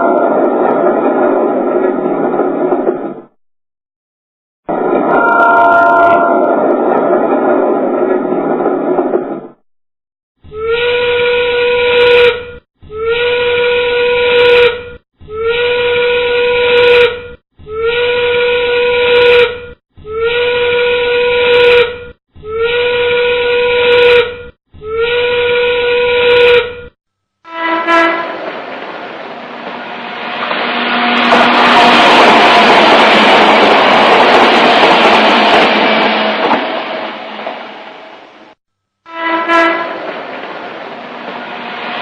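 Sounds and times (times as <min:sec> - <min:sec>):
train whistle blasts: 0:05.1 - 0:06.4, 0:10.9 - 0:12.4, 0:27.4 - 0:28.4, 0:39.1 - 0:40.0.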